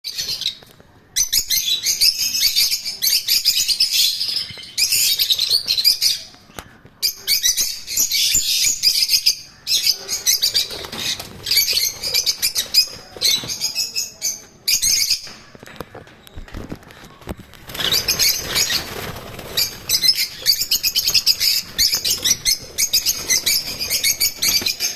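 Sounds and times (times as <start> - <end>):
lovebirds chirping shrilly: 7.0 - 15.4, 17.7 - 24.9.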